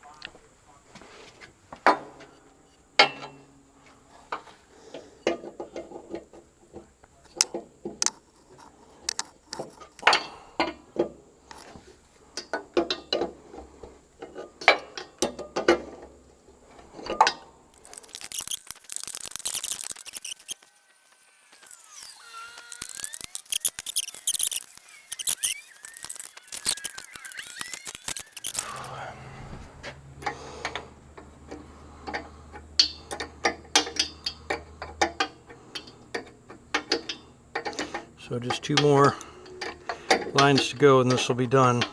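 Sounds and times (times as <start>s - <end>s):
metal tool clicks and clanks: 7.4s - 11.8s, 16.9s - 20.7s, 21.6s - 28.9s, 30.2s - 41.9s
ratchet wrench clicking: 17.8s - 29.1s, 30.2s - 41.2s.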